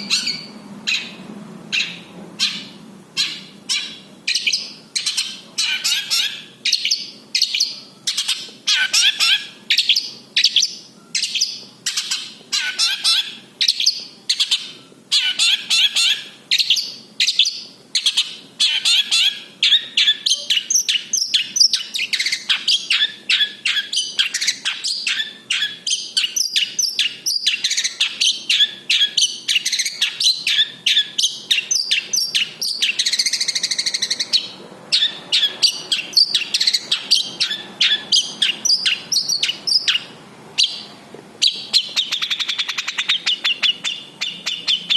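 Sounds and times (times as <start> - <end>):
bird singing varied song: 0.0 - 44.9.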